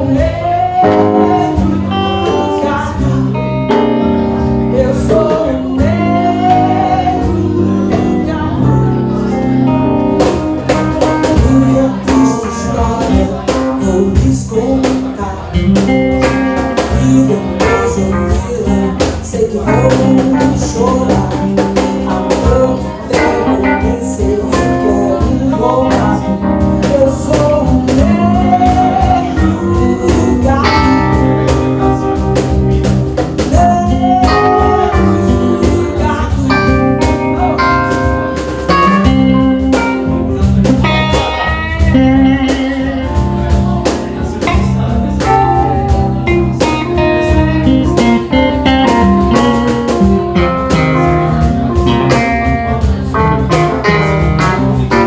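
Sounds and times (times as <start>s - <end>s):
bluesy rock band playing: 0.0s - 55.0s
lead guitar with bent notes: 0.0s - 55.0s.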